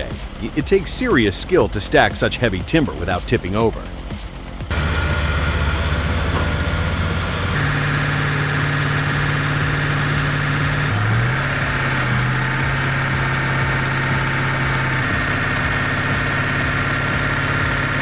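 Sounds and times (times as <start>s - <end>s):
heavy machine engine running: 4.6s - 18.0s.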